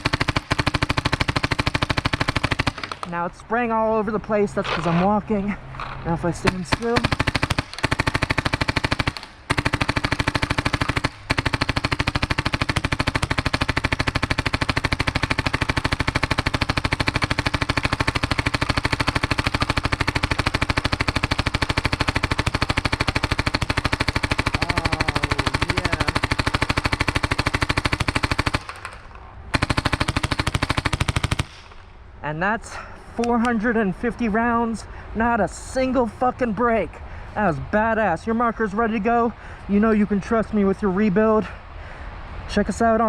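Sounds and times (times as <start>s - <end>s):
paintball marker firing rapidly: 0.0s - 3.2s, 6.2s - 31.8s.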